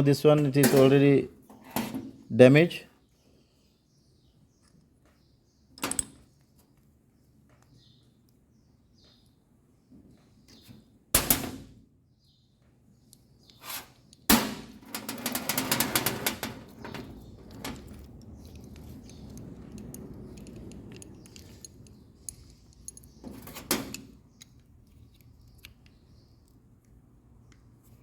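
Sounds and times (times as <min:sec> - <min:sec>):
metal tools clinking and rattling: 0:00.5 - 0:01.1, 0:05.8 - 0:06.3, 0:14.9 - 0:24.6
rattling clicks: 0:15.0 - 0:26.0.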